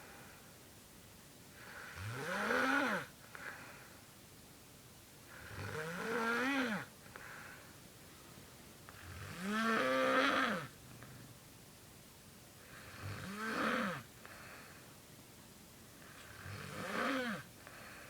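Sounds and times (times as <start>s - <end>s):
faint breath: 0.0s - 0.6s, 3.2s - 4.1s, 7.0s - 8.5s, 14.2s - 15.0s, 17.6s - 18.0s
person snoring: 16.4s - 17.5s.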